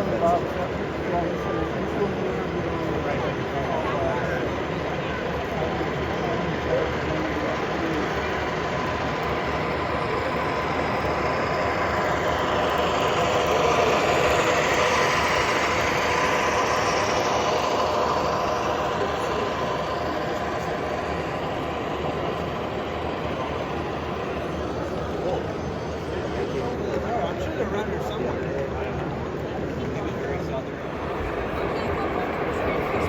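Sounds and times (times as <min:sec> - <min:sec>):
train rumbling past on rails: 0:00.0 - 0:33.0
faint steady tones: 0:30.3 - 0:33.0.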